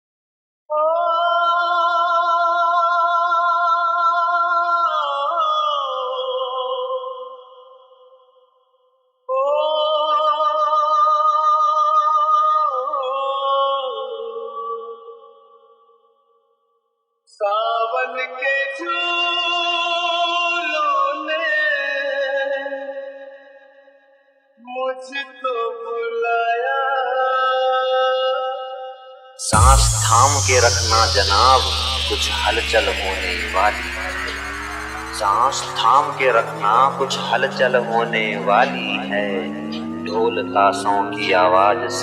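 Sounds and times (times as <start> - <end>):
sustained synth chord: 29.5 - 42.0.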